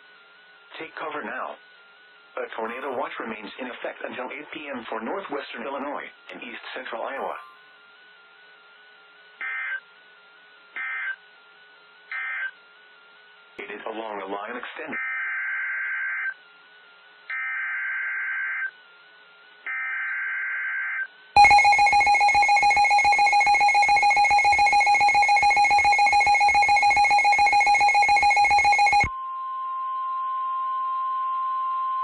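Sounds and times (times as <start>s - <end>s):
harsh two-tone attention signal: 21.4s - 30.7s
steady single tone: 29.0s - 32.0s.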